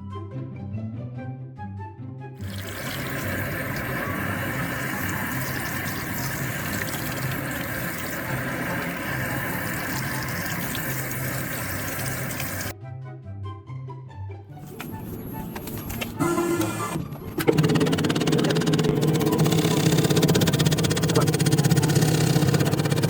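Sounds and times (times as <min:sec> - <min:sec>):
background music: 0:00.0 - 0:18.0.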